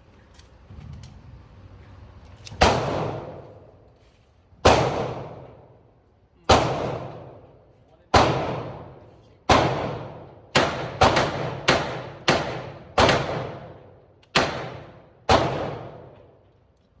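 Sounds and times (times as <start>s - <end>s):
echoing gunshots: 2.6s - 3.7s, 4.6s - 5.8s, 6.5s - 16.4s.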